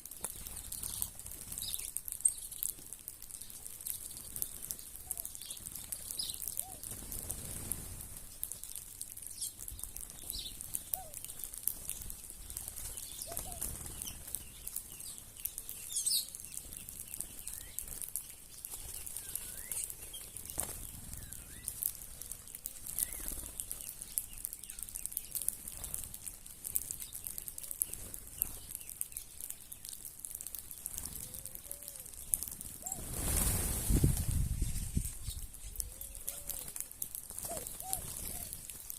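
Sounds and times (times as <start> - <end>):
birds chirping: 0.4 - 2.7, 3.3 - 26.1, 26.8 - 38.9
wing flutters: 3.6 - 24.1, 30.9 - 38.8
low rustle: 33.0 - 36.7.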